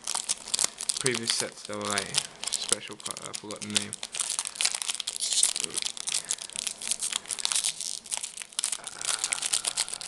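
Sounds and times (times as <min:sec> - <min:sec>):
wrapper crinkling and tearing: 0:00.0 - 0:10.0.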